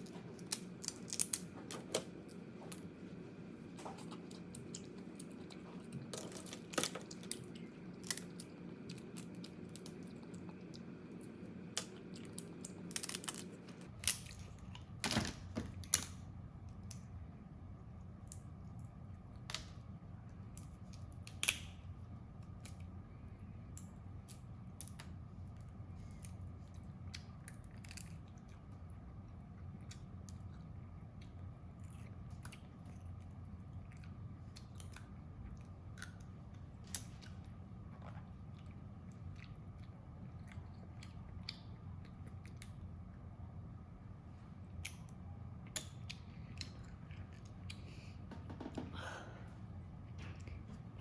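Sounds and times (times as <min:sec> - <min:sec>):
crab shell cracking: 0:20.5 - 0:21.9.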